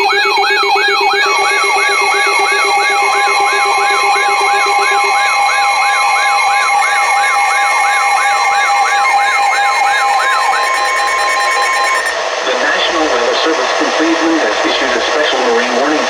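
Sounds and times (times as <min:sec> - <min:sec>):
low pulsing tone: 0:00.0 - 0:12.2
steady high alert tones: 0:00.0 - 0:12.2
siren-like alarm sweeping: 0:00.0 - 0:12.4.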